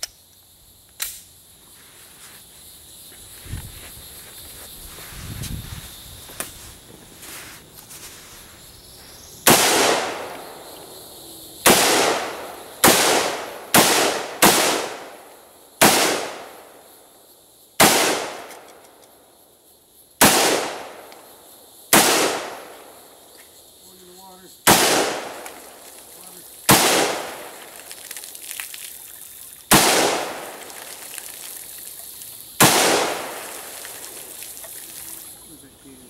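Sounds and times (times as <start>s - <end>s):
gunshots: 9.5s - 10.4s, 11.6s - 15.2s, 15.8s - 16.5s, 17.8s - 18.6s, 20.2s - 21.0s, 21.9s - 22.6s, 24.7s - 25.5s, 26.7s - 27.6s, 29.7s - 30.7s, 32.6s - 33.6s.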